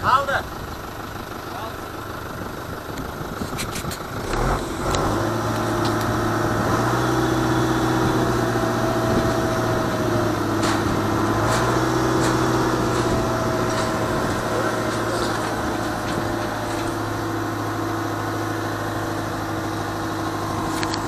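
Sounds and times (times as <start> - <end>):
tractor engine running: 0.0 - 21.0
sharp machinery clicks: 10.5 - 17.2.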